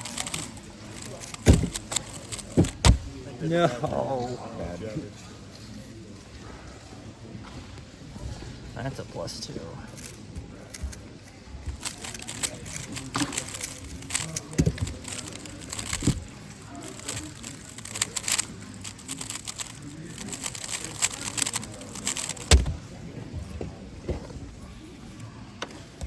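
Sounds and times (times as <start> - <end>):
indistinct background voices: 0.0 - 26.0
dull thumps: 1.4 - 3.2.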